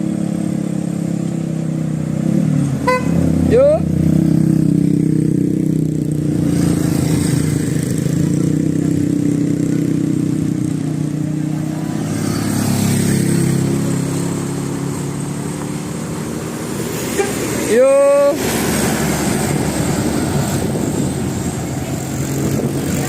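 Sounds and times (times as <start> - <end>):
bus engine running: 4.9 - 23.0.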